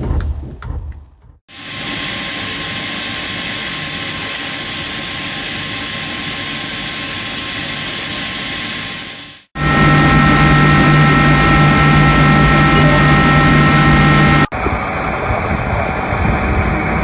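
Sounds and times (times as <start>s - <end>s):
loud steady rushing noise: 1.5s - 17.0s
faint steady whine: 9.6s - 16.9s.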